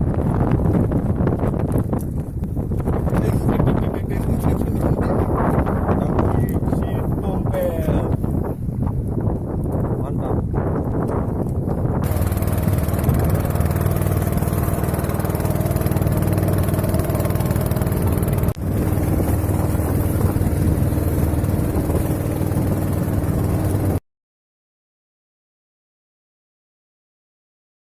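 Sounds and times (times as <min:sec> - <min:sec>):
motor engine running: 0:11.6 - 0:24.0.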